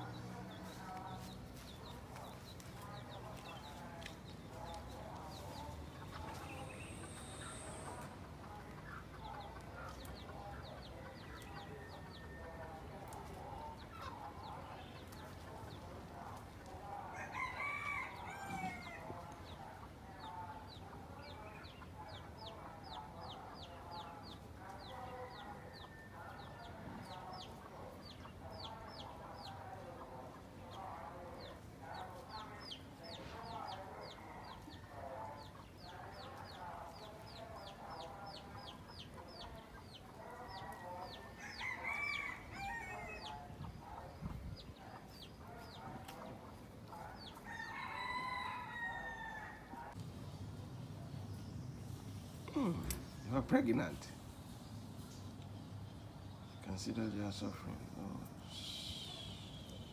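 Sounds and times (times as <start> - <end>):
chickens clucking: 0.0 - 59.9
rooster crowing: 17.1 - 19.2, 40.5 - 43.4, 47.4 - 50.0
high peeping calls: 50.2 - 59.9.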